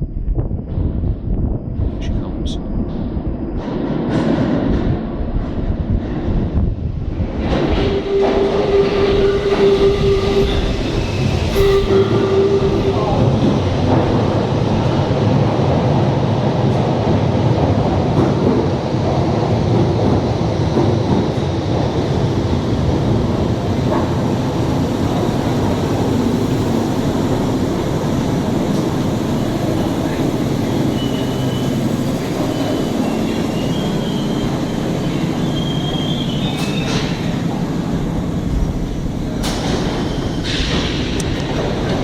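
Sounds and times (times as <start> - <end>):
train rumbling on rails: 0.0 - 42.0
faint high brake squeal: 8.0 - 13.6, 30.6 - 37.4.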